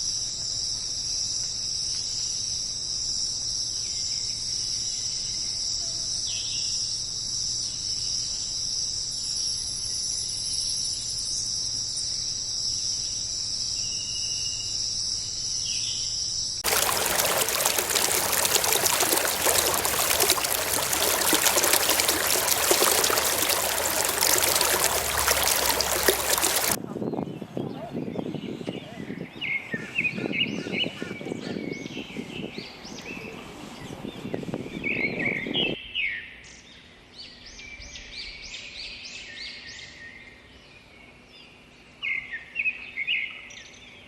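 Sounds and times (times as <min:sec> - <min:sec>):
running water rushing: 0:16.6 - 0:26.8.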